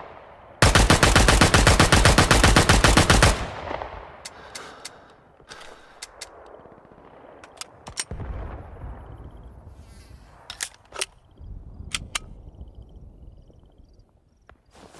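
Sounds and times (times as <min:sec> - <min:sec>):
sharp cracks: 0:00.0 - 0:08.4.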